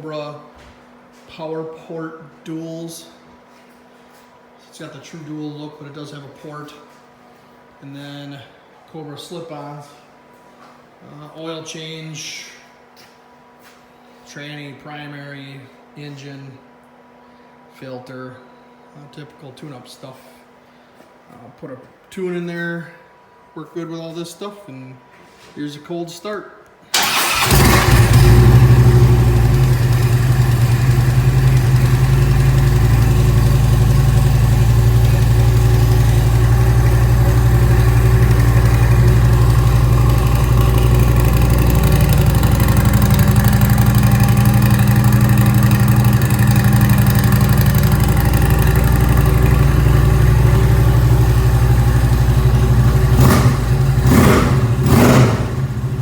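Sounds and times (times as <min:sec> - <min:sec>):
motorcycle engine idling: 0:27.0 - 0:56.0
motorcycle throttle blips: 0:27.0 - 0:56.0.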